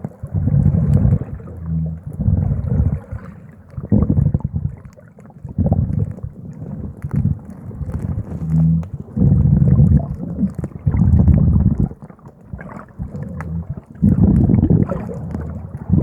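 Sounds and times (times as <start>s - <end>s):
muffled water sloshing and bubbling: 0.0s - 16.0s
short low hum: 8.0s - 10.0s.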